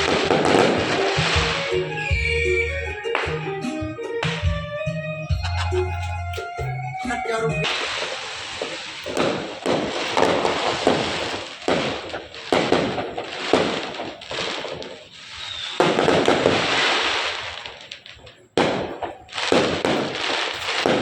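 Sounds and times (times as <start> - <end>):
fireworks bangs and crackle: 0.0 - 2.0, 7.1 - 21.0.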